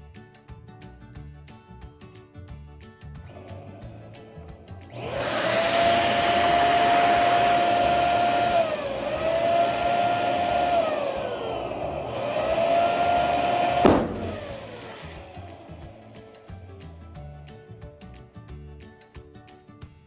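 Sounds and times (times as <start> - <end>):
electric balloon pump motor: 3.2 - 16.9
balloon bang: 12.0 - 16.2.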